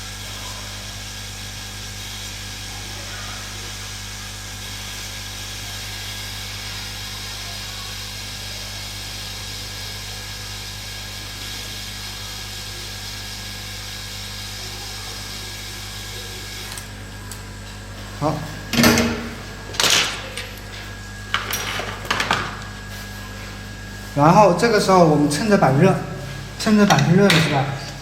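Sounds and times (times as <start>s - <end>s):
hot air station blowing: 15.2s - 28.0s.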